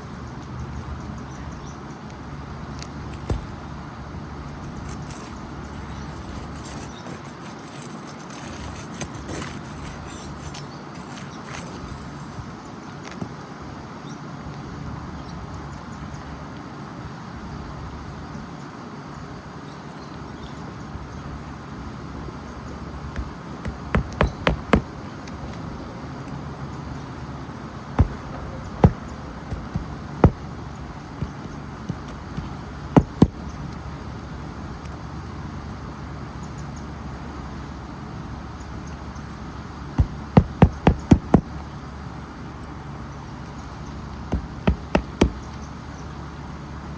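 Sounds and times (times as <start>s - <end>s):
steady background hum: 0.0s - 46.9s
hammer driving nails into shingle: 23.1s - 25.6s, 28.0s - 33.7s, 40.0s - 41.6s, 44.3s - 45.6s.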